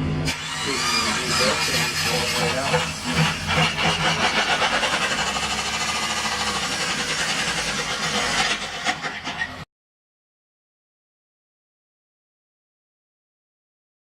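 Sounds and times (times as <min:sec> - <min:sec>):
engine knocking: 0:01.5 - 0:09.6.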